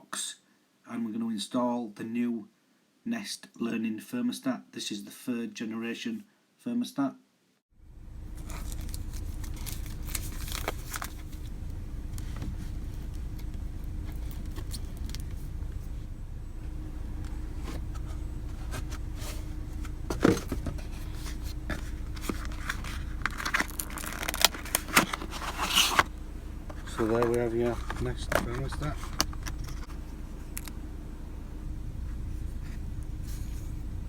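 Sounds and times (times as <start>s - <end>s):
steady low hum: 7.8s - 34.0s
cardboard packaging handled: 8.3s - 16.0s, 17.0s - 30.7s
packaging tearing: 8.4s - 11.4s, 21.0s - 26.1s.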